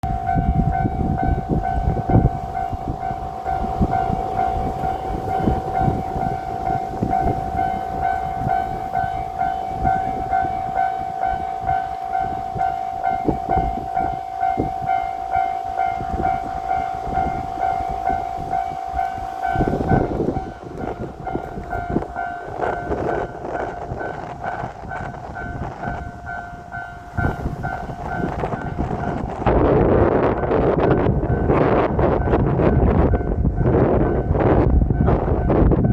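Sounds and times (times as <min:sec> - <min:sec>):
level-crossing alarm ringing: 0:00.0 - 0:29.5
train engine rumbling: 0:00.0 - 0:35.9.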